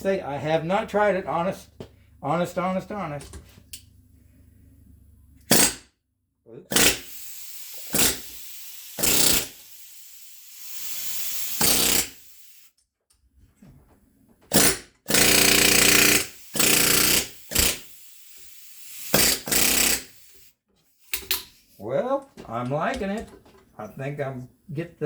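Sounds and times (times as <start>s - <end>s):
pneumatic rivet gun hammering: 5.4s - 5.8s, 6.7s - 12.7s, 14.5s - 20.5s, 21.1s - 21.5s.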